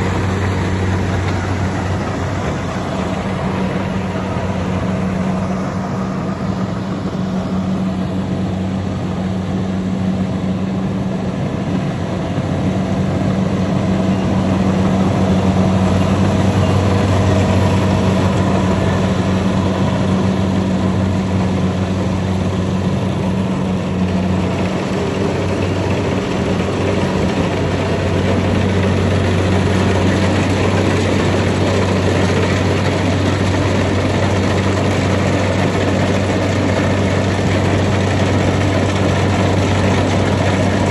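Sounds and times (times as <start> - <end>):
combine harvester engine hum: 0.0 - 40.9.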